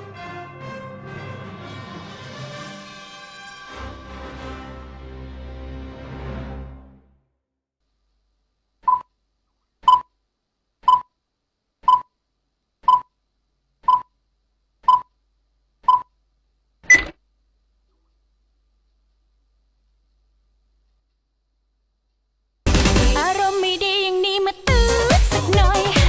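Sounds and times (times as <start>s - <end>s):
short electronic beeps: 8.9s - 9.1s, 9.9s - 10.1s, 10.9s - 11.1s, 11.9s - 12.1s, 12.9s - 13.1s, 13.9s - 14.1s, 14.9s - 15.1s.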